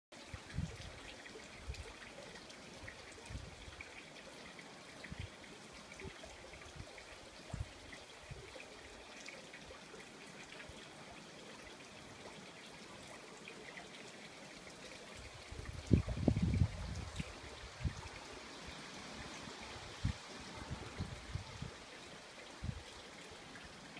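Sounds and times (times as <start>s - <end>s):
steady outdoor hiss: 0.1s - 23.9s
wind buffeting microphone: 0.3s - 0.9s, 15.3s - 18.2s, 19.8s - 21.8s.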